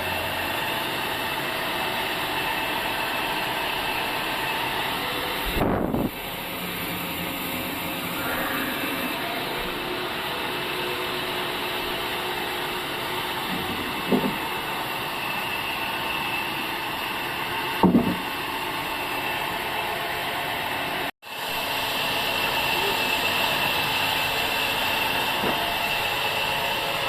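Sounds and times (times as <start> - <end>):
sawmill machinery running: 0.0 - 27.0
short knocks: 13.5 - 14.4, 17.8 - 18.3.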